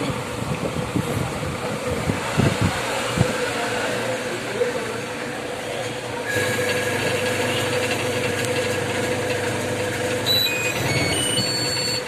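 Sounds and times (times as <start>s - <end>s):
washing machine motor hum: 0.0s - 12.0s
short electronic beeps: 10.2s - 12.0s.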